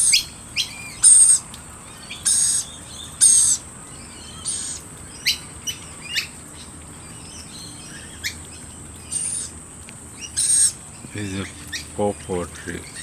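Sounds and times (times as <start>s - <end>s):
birds whistling falling notes: 0.0s - 9.6s, 10.2s - 13.0s
birds screeching: 0.0s - 13.0s.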